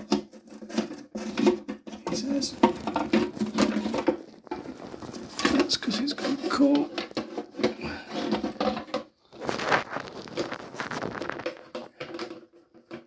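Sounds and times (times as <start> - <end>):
plastic syphon scraping in cistern: 0.0 - 13.0.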